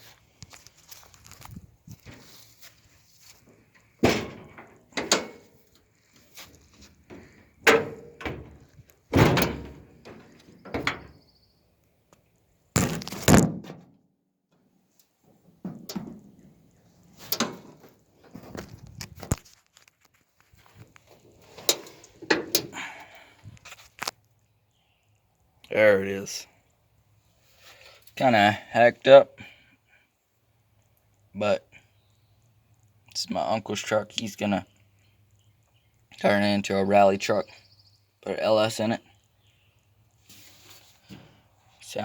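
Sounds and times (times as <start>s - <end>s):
truck doors thunking shut: 4.0s - 5.4s, 7.1s - 11.2s, 12.8s - 13.9s.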